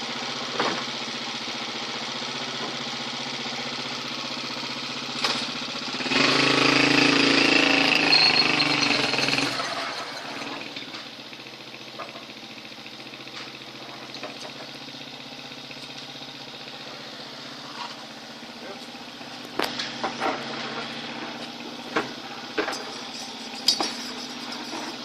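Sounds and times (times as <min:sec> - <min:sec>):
motorcycle engine idling and revving: 0:00.0 - 0:25.0.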